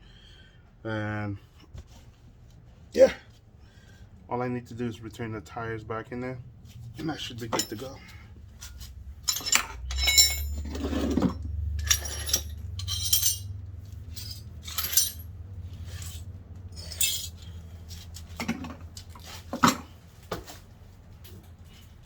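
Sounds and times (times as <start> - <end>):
metal tools clinking: 7.2 - 19.9.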